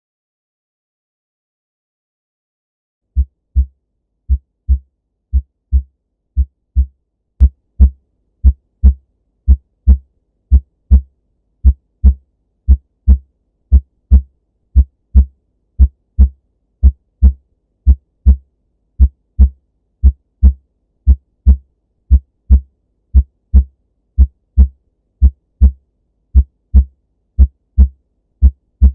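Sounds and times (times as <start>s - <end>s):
heartbeat thumps: 3.2s - 3.7s, 4.3s - 18.4s, 19.0s - 25.8s, 26.4s - 28.9s.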